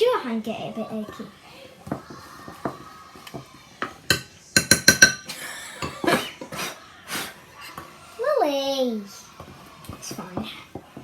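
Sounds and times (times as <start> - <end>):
spoon clinking against bowl: 4.1 - 6.0.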